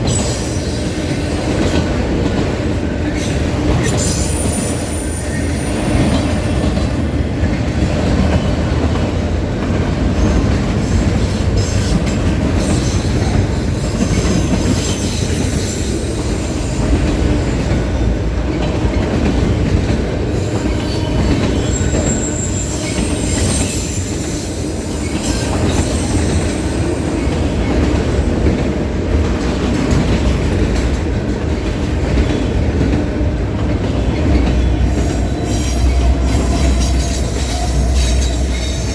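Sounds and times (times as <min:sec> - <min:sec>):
train rumbling on rails: 0:00.0 - 0:38.9
wheel squeals: 0:13.9 - 0:15.8, 0:20.8 - 0:26.4.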